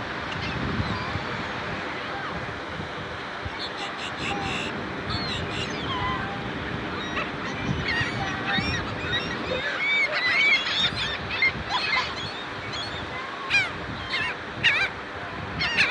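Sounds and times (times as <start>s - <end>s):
seagulls squawking: 3.6s - 15.9s.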